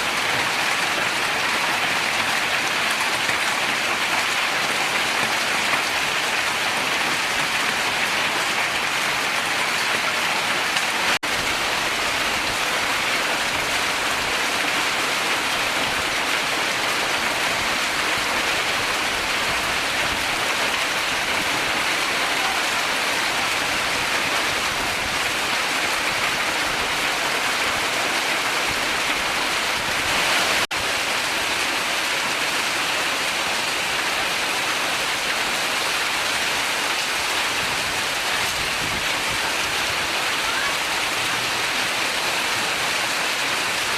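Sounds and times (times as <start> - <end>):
heavy rain and hail: 0.0 - 43.9.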